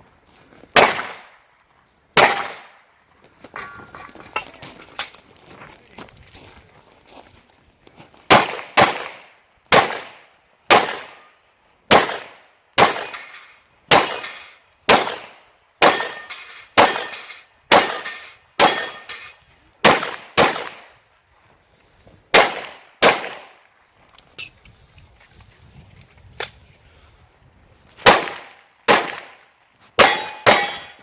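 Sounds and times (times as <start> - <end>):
pistol shots echoing: 0.8 - 1.3, 2.2 - 2.8, 8.3 - 11.3, 11.9 - 13.3, 13.9 - 20.9, 22.3 - 23.6, 28.0 - 29.4, 30.0 - 31.0.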